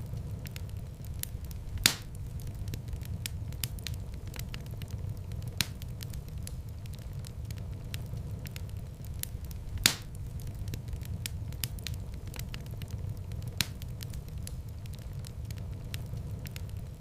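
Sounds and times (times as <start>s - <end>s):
loud fire pops: 0.0s - 17.0s
wood fire crackling: 0.0s - 17.0s.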